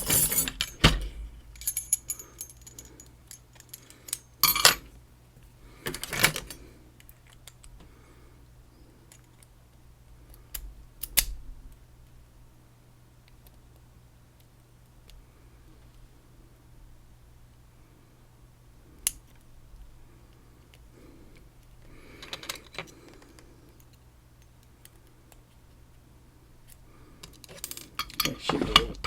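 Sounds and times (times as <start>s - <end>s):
keys jingling on a ring: 0.0s - 4.9s.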